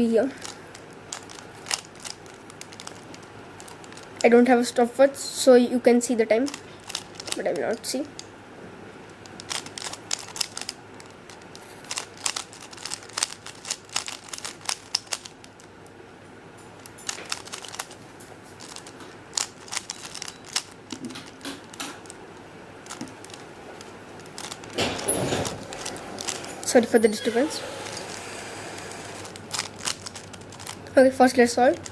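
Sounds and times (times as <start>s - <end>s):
puzzle cube clicking: 0.4s - 4.3s, 6.4s - 8.3s, 9.2s - 15.6s, 16.8s - 18.0s, 18.6s - 22.2s, 22.8s - 30.8s.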